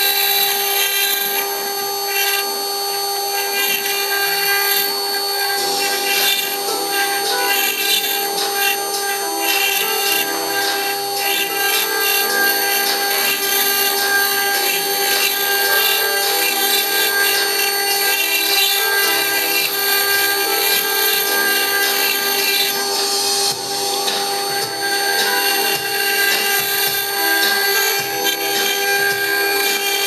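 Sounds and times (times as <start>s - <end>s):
cnc router whining and grinding: 0.0s - 30.0s.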